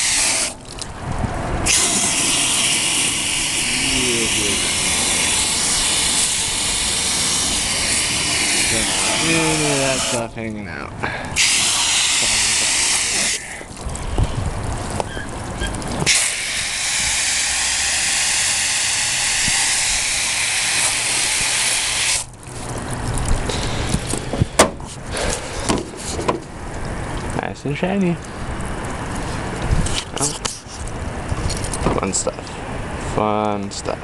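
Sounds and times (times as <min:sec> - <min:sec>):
spray nozzle hissing: 0:00.0 - 0:00.6, 0:01.7 - 0:10.2, 0:11.4 - 0:13.4, 0:16.1 - 0:22.3.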